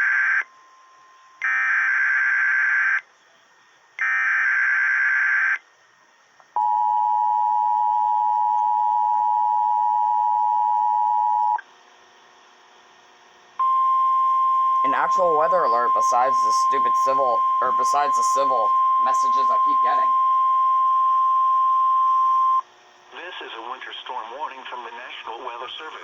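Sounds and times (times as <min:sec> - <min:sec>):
two-tone attention signal: 0:13.6 - 0:22.6
warbling digital data tones: 0:13.6 - 0:22.6.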